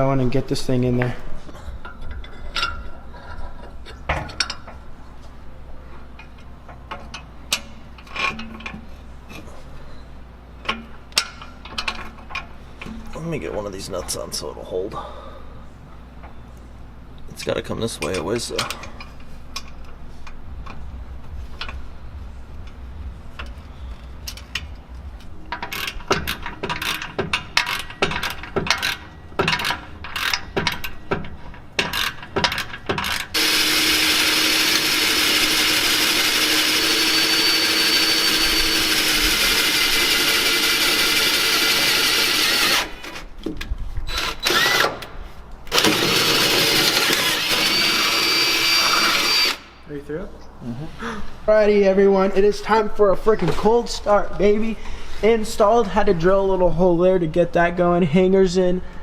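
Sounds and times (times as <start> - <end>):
power drill running: 33.4 - 43.2, 44.1 - 45.1, 45.7 - 49.7.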